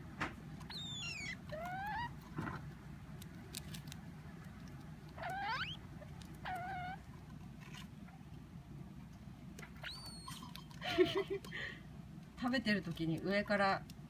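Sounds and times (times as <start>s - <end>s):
degu squeaking: 0.6s - 2.6s, 5.1s - 7.3s, 9.7s - 10.8s.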